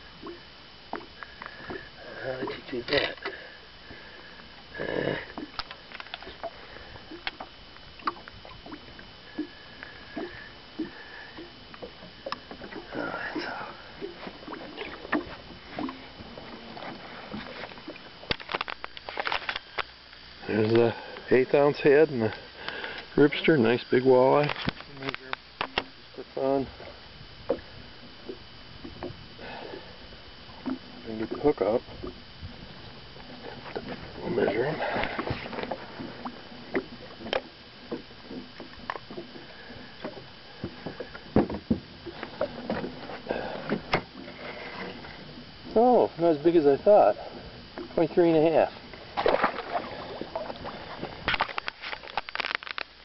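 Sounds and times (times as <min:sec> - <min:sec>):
knocks and clicks in a boat: 0:00.2 - 0:04.0, 0:05.3 - 0:19.9, 0:24.3 - 0:26.0, 0:27.4 - 0:29.7, 0:30.6 - 0:46.0, 0:47.8 - 0:53.0
fish knocking in a boat: 0:34.8 - 0:45.0.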